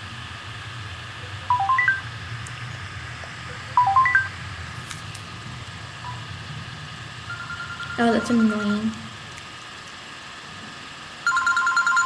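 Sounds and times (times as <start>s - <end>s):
mobile phone ringtone beeps: 1.5s - 2.0s, 3.8s - 4.3s, 7.3s - 8.8s, 11.3s - 12.0s.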